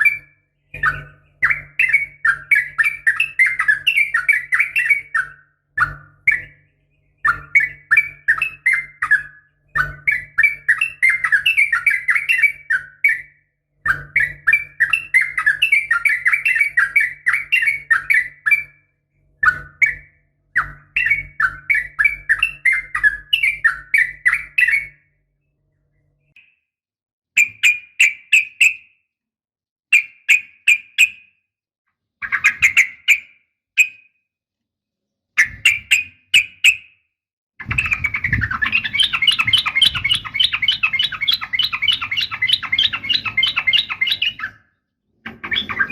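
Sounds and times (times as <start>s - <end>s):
bird chattering calls: 37.6s - 44.6s.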